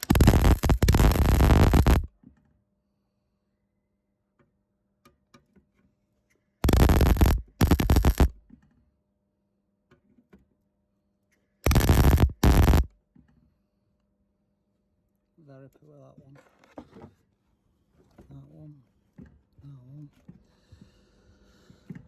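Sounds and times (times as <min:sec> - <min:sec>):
welder arc crackling: 0:00.0 - 0:02.1, 0:06.6 - 0:08.4, 0:11.7 - 0:12.9.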